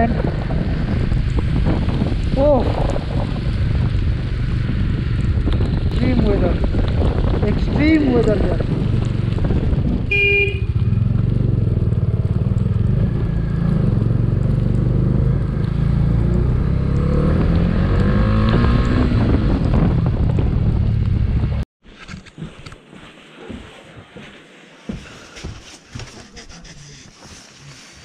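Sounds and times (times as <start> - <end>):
wind rush: 0.0 - 13.7, 15.8 - 21.6
motorcycle engine running: 0.0 - 17.1.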